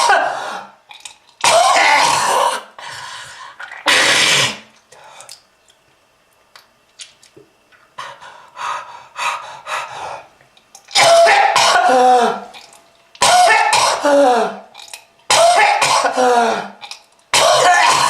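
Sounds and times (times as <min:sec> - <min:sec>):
person coughing: 0:01.4 - 0:02.7, 0:11.0 - 0:12.5, 0:13.2 - 0:14.6, 0:15.3 - 0:18.0.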